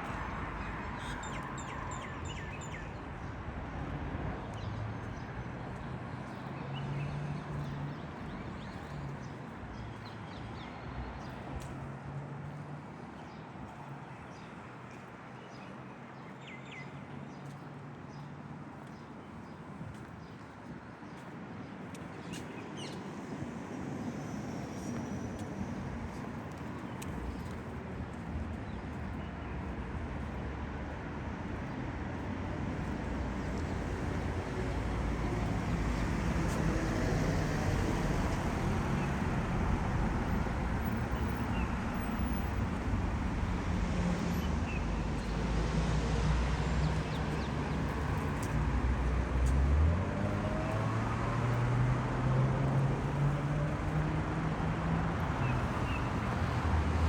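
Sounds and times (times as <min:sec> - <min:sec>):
road traffic: 0:00.0 - 0:57.0
vehicle pulling away: 0:42.9 - 0:55.0.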